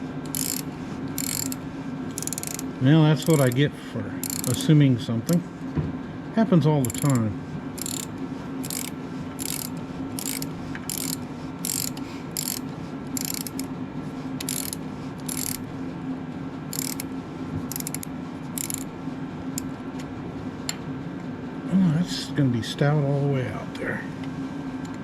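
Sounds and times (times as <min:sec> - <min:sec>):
steady low hum: 0:00.0 - 0:25.0
ratchet wrench clicking: 0:00.3 - 0:03.6, 0:04.2 - 0:04.7, 0:06.8 - 0:13.7, 0:14.4 - 0:15.6, 0:16.7 - 0:17.1, 0:17.7 - 0:18.9.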